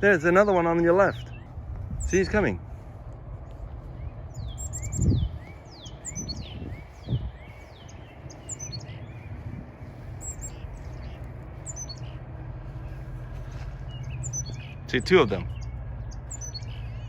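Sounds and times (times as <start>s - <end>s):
small songbirds calling: 0.0s - 17.0s.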